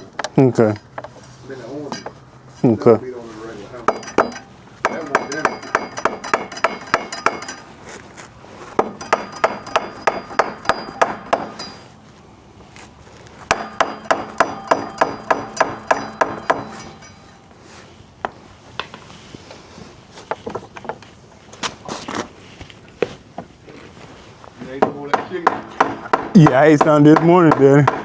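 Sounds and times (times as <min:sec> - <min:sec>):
hammer beating on wooden block: 0:08.8 - 0:11.6, 0:13.5 - 0:17.0, 0:24.8 - 0:28.0.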